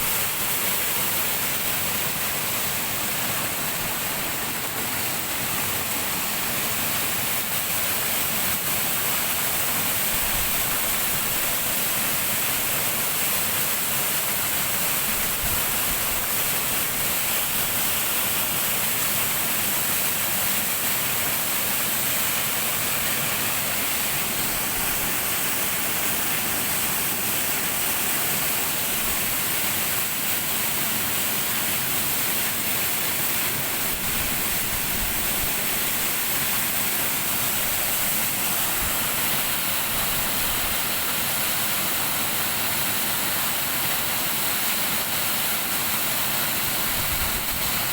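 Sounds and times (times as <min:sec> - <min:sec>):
waterfall rushing: 0:00.0 - 0:47.9.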